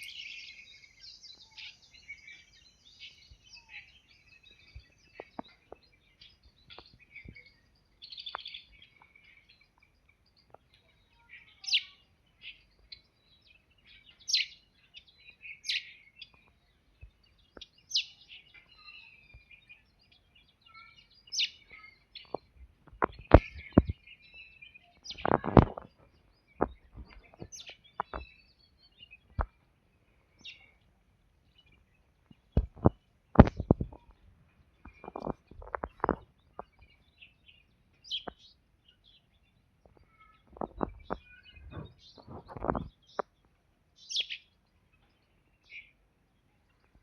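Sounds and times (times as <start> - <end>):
songbirds chirping: 0.0 - 47.0.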